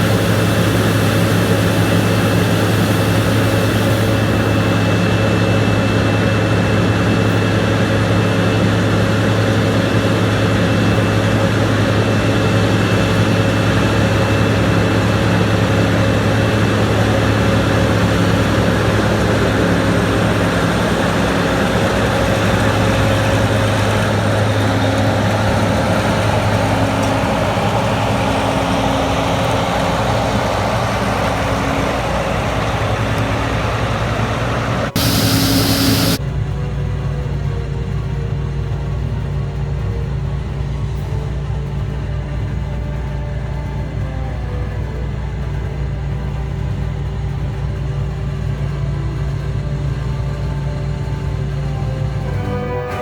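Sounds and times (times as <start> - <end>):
faint high whine: 0.0 - 5.7, 28.4 - 36.2
diesel engine droning: 0.0 - 53.0.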